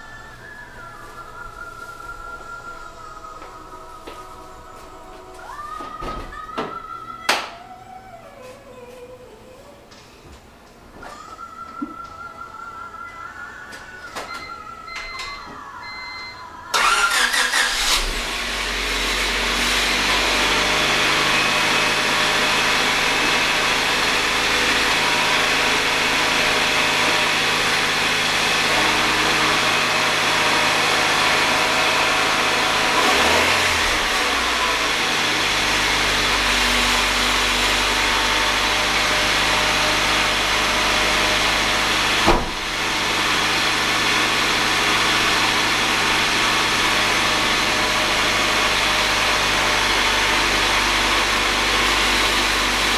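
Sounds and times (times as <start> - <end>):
car engine cranking and idling: 16.7 - 52.9.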